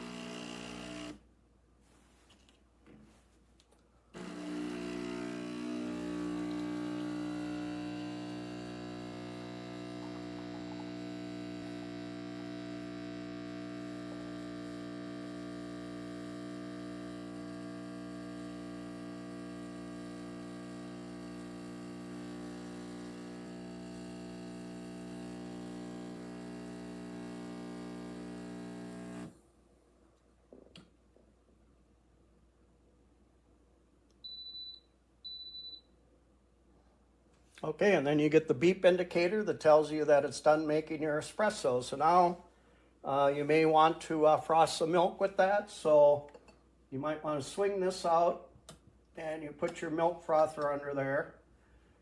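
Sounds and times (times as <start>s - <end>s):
espresso machine pump buzzing: 0.0s - 1.2s, 4.2s - 29.4s.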